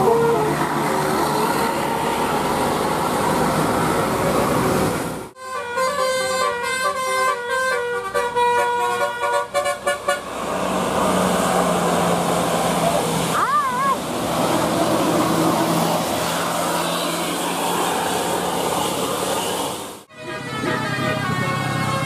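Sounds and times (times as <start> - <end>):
bus engine and road noise: 0.0 - 22.0
multi-tone air horn tune: 5.4 - 10.3, 18.6 - 22.0.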